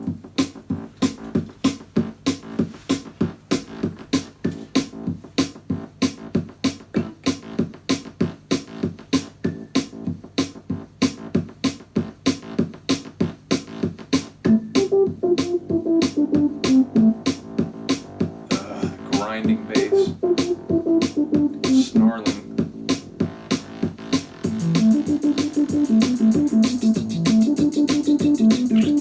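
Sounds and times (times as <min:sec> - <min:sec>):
electronic drum groove: 0:00.0 - 0:29.0
synth bass line: 0:14.5 - 0:29.0
synth melody: 0:14.5 - 0:29.0.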